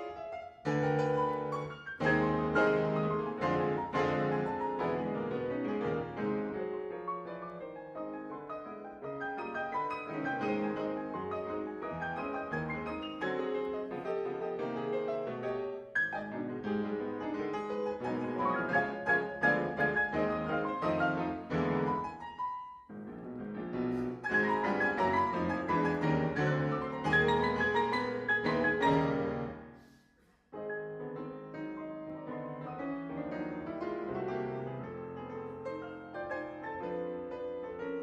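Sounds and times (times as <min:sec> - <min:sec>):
ragtime piano ensemble: 0:00.0 - 0:29.7, 0:30.6 - 0:38.0.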